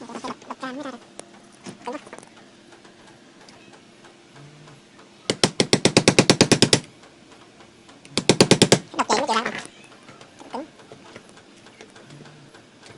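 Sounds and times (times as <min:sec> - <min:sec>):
tool hammering rapid knocks: 0:05.3 - 0:06.9, 0:08.1 - 0:08.9.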